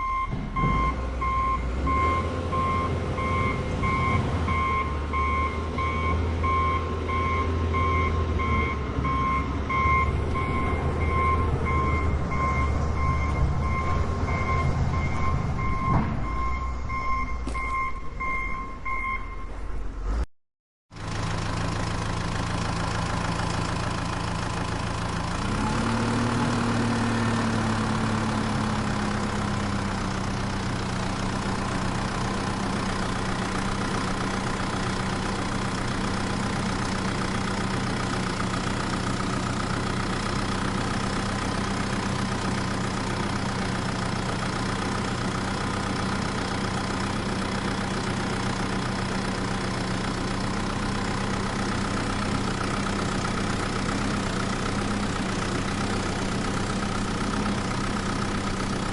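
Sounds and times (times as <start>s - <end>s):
tractor engine idling and revving: 0.0s - 20.3s, 20.9s - 58.9s.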